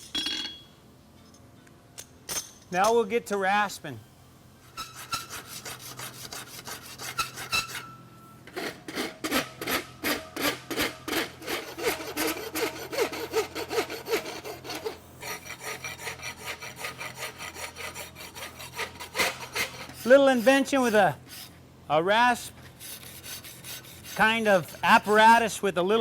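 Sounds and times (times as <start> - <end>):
rasp filing metal horseshoe: 4.7 - 21.6, 22.7 - 25.5.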